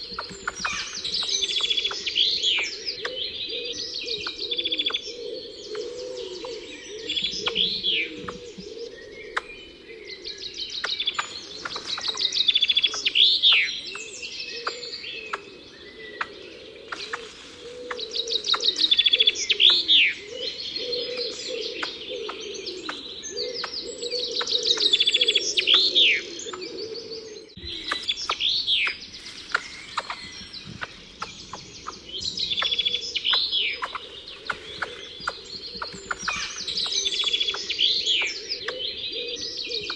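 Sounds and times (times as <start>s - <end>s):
bird chirps: 0.0s - 39.9s
songbird singing: 0.0s - 39.9s.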